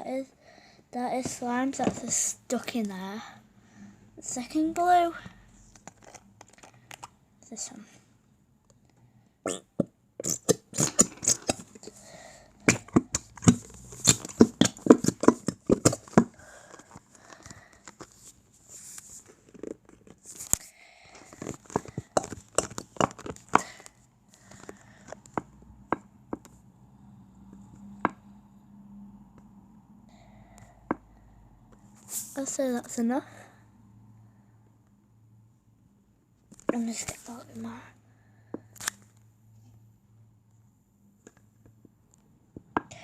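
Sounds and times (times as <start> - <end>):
plastic glue bottle clicking and crackling: 21.4 - 23.9.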